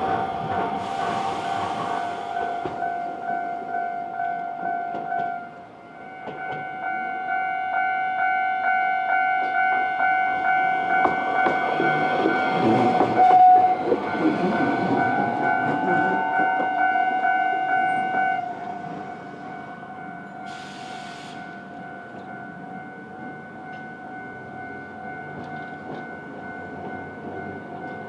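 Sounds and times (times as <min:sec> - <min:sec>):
tram wheels clattering on rails: 0:00.0 - 0:03.7, 0:06.2 - 0:06.8, 0:10.3 - 0:17.0, 0:23.6 - 0:28.0
level crossing warning bell: 0:01.6 - 0:28.0.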